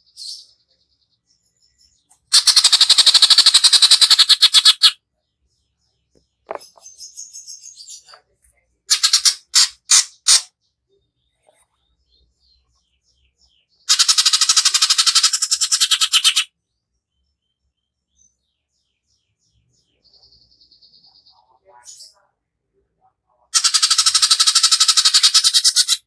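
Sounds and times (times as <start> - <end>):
bird singing harsh rattling trills: 1.1 - 5.0, 8.9 - 10.6, 12.5 - 16.5, 23.6 - 26.0.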